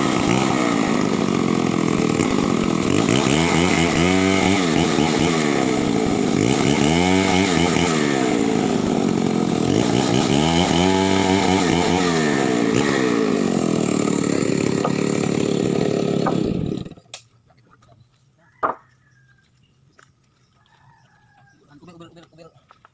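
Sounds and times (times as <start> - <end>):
chainsaw cutting wood: 0.0 - 17.4.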